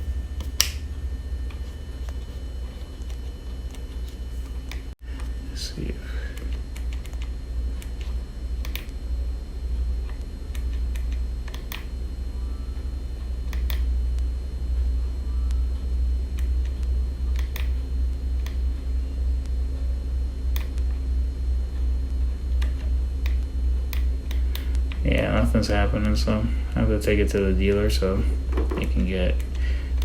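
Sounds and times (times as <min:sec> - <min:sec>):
switch button clicks: 0:00.0 - 0:00.9, 0:08.6 - 0:09.0, 0:10.1 - 0:11.9, 0:13.5 - 0:13.9, 0:16.4 - 0:17.8, 0:20.5 - 0:20.9
steady low rumble: 0:00.0 - 0:30.0.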